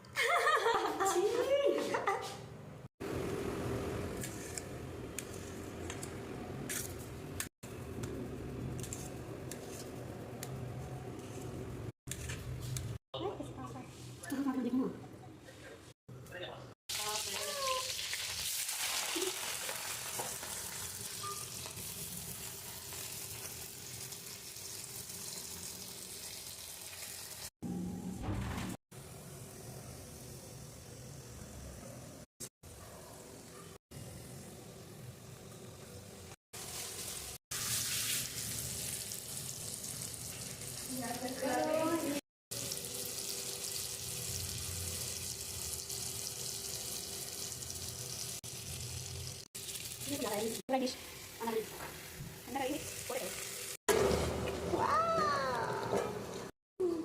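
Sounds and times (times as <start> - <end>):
food sizzling in a pan: 16.9 - 27.5, 34.0 - 54.3.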